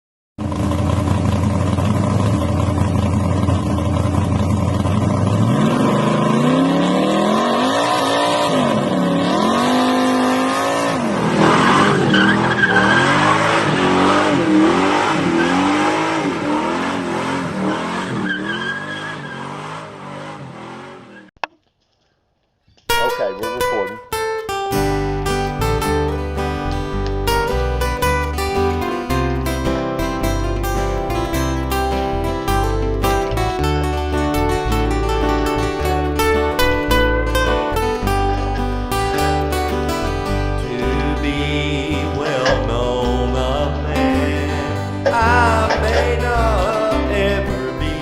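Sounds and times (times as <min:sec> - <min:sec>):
car engine idling and revving: 0:00.4 - 0:21.5, 0:24.6 - 0:48.0
tyre squeal: 0:11.4 - 0:14.3, 0:17.7 - 0:20.2.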